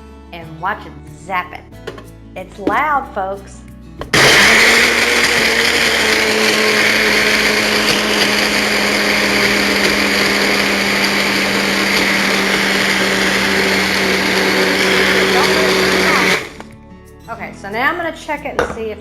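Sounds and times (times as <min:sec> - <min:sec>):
blender crushing ice: 0:04.1 - 0:16.7.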